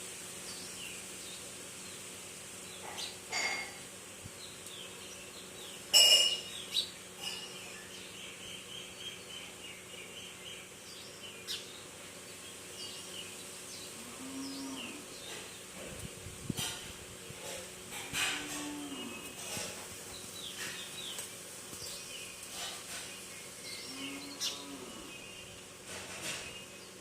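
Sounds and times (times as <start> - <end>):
wild birds chirping: 0.4 - 27.0.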